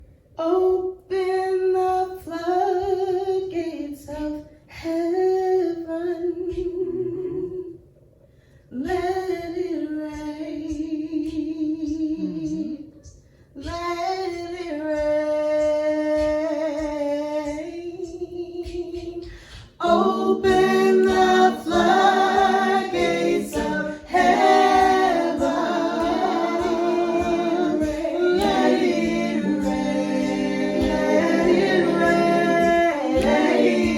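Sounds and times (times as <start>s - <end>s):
woman singing: 0.4s - 7.8s, 8.7s - 33.9s
group singing in harmony: 19.2s - 33.9s.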